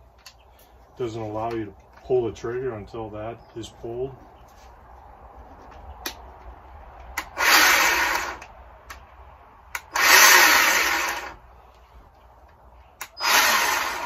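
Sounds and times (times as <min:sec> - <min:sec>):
electric chainsaw running: 0:07.2 - 0:08.4, 0:09.8 - 0:11.4, 0:13.1 - 0:14.0.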